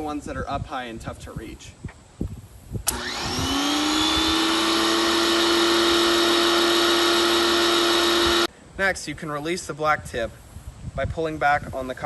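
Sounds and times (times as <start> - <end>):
pressure washer motor whine: 2.9 - 8.5.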